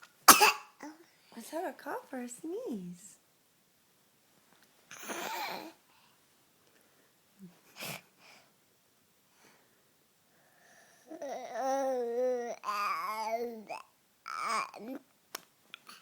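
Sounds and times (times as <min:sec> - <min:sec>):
baby sneezing: 0:00.3 - 0:00.8
baby babbling: 0:05.0 - 0:05.8, 0:11.0 - 0:15.1.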